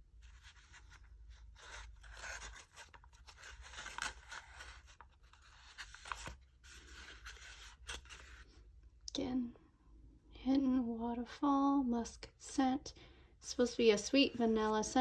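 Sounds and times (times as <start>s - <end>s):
paper packaging rustling: 0.2s - 8.5s.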